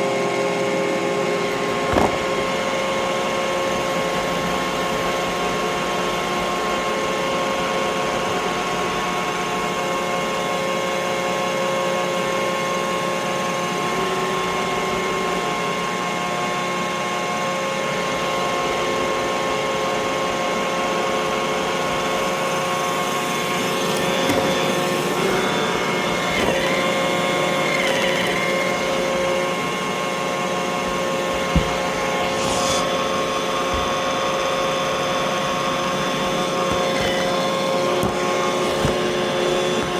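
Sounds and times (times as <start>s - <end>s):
robot vacuum motor whine: 18.7s - 39.9s.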